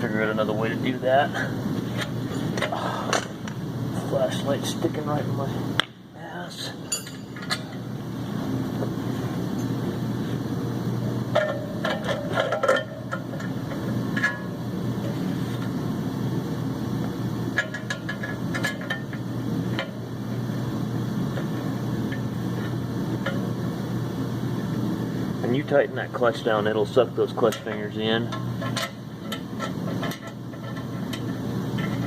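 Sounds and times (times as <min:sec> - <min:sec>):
steady low hum: 0:00.0 - 0:32.0
metal clinks of tools and bolts: 0:06.9 - 0:07.8.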